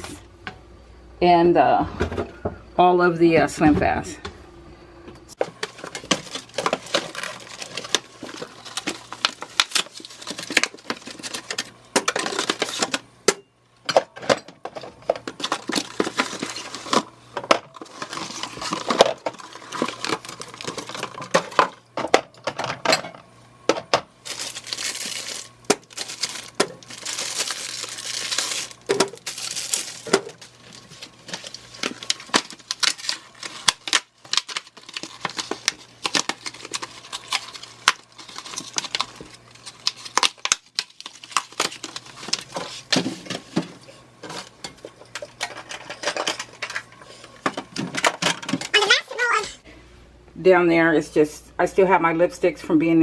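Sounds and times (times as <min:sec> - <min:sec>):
plastic packaging crinkling: 0:05.4 - 0:13.0, 0:15.0 - 0:17.1, 0:17.7 - 0:21.8, 0:24.2 - 0:49.4.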